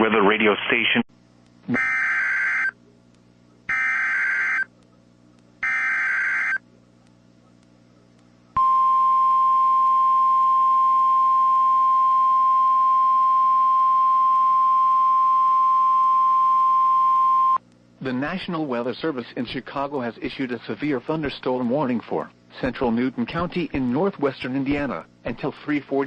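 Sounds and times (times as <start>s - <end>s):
steady warning alarm tone: 1.7s - 2.8s, 3.7s - 4.7s, 5.6s - 6.6s.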